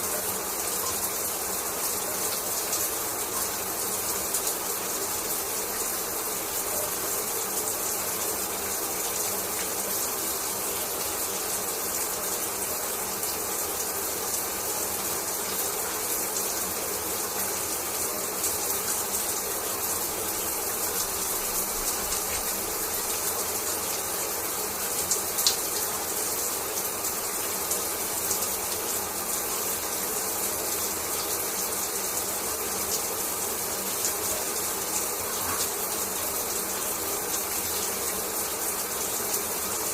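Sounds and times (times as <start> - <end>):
water drips: 18.3 - 26.2, 33.9 - 39.4.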